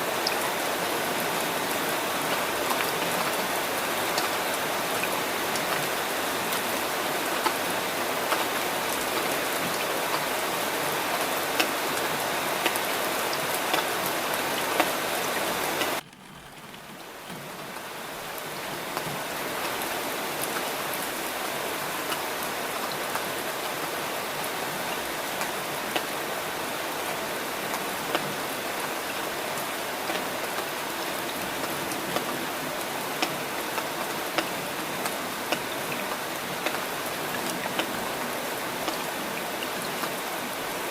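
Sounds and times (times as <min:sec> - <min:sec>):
steady rain: 0:00.0 - 0:24.5
rain drop ticks: 0:15.9 - 0:17.8.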